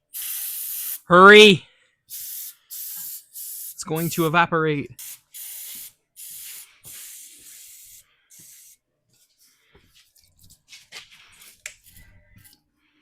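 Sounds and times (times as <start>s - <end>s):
aerosol can spraying: 0.1s - 1.1s, 2.1s - 4.3s, 5.0s - 8.8s.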